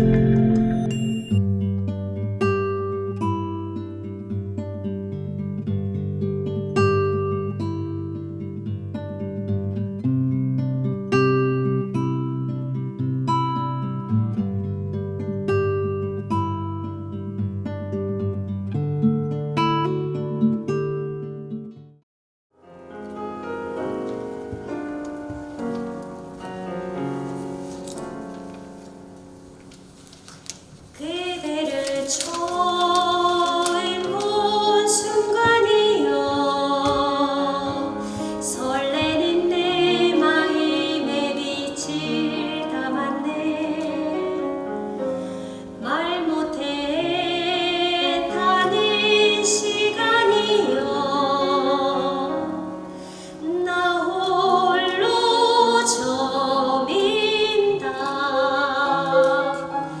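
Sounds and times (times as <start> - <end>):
operatic singing with vibrato: 31.0 - 44.4, 45.8 - 52.6.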